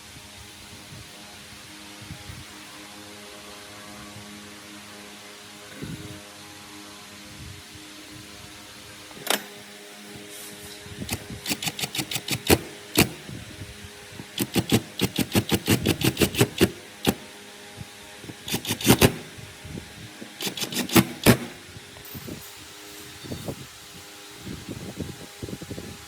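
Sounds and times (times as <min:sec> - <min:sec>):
sharp tapping: 0:11.1 - 0:13.2, 0:14.3 - 0:17.2, 0:18.4 - 0:19.3.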